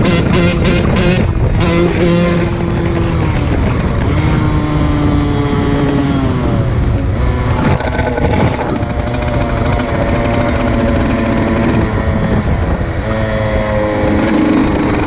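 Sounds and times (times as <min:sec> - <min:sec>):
dirt bike engine revving: 0:00.0 - 0:15.0.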